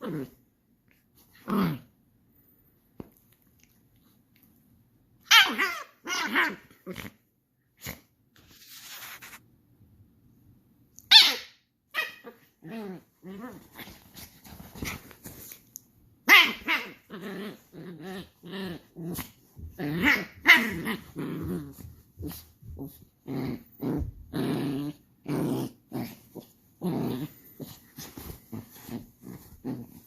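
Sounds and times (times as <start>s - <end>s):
puppy growling: 0.0s - 0.4s, 12.2s - 15.2s, 16.3s - 30.0s.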